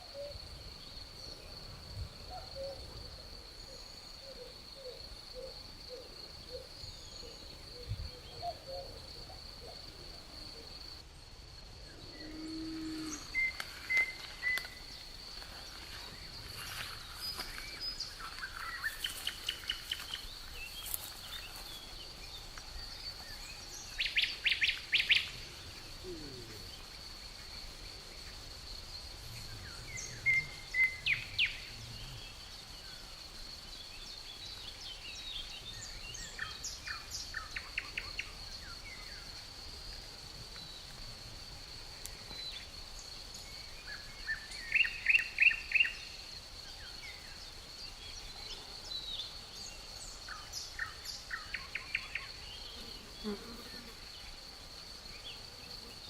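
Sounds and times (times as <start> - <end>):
crickets trilling: 0.0 - 56.0
songbirds calling: 42.1 - 54.4.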